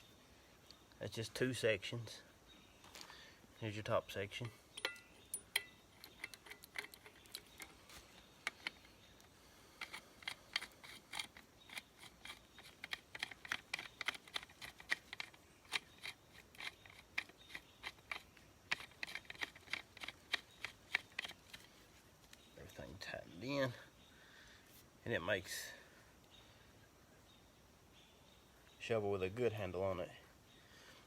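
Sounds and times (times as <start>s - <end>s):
handle threading clicks: 4.4s - 7.8s, 8.4s - 21.7s.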